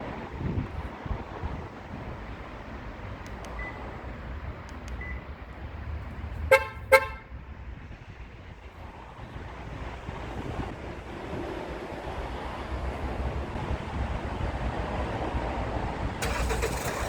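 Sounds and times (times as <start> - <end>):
wind on microphone: 0.0 - 2.3, 7.1 - 16.2
faint clicks: 3.2 - 3.7
short beeps: 3.6 - 3.8, 5.0 - 5.2
car horn chirps: 6.5 - 7.4.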